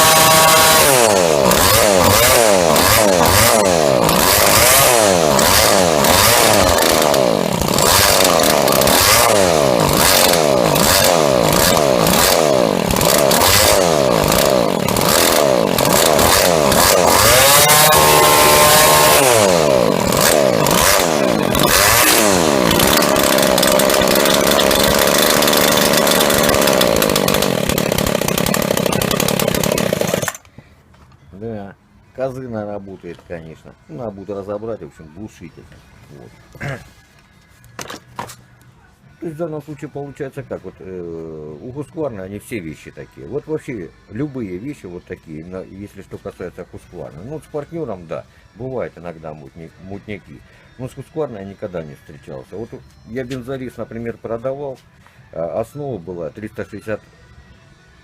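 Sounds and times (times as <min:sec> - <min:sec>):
string trimmer engine revving: 0:00.0 - 0:30.5.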